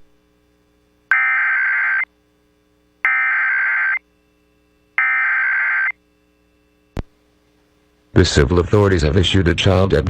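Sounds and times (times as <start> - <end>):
screechy digital data tones: 1.1 - 2.1, 3.1 - 4.0, 5.0 - 5.9.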